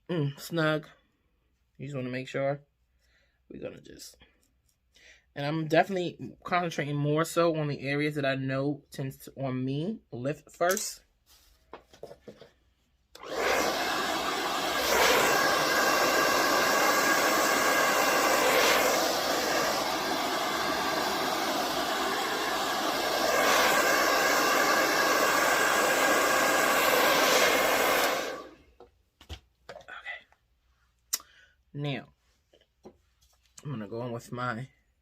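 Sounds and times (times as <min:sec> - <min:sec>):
hair dryer running: 0:13.2 - 0:28.6.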